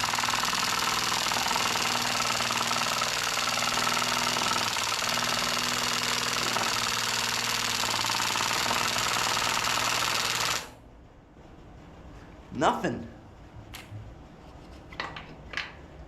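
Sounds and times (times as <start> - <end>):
cordless drill running: 0.0 - 10.8.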